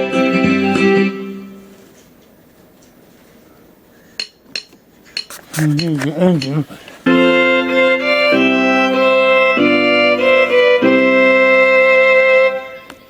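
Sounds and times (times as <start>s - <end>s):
keyboard playing string chords: 0.0s - 1.6s, 7.1s - 13.0s.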